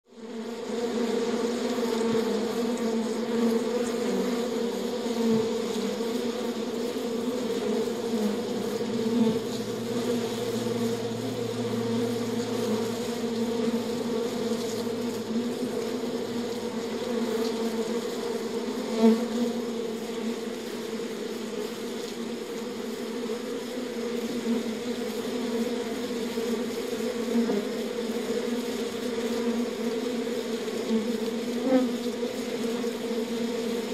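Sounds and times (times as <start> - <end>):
bees buzzing: 0.1 - 33.9.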